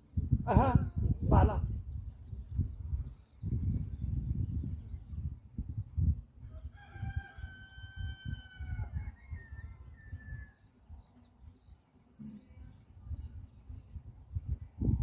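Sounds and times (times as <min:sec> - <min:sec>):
rooster crowing: 0:06.5 - 0:10.6.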